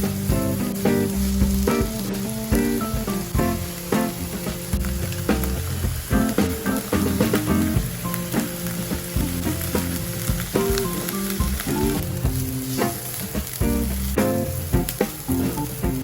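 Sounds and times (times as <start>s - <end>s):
food sizzling in a pan: 0.0s - 16.0s.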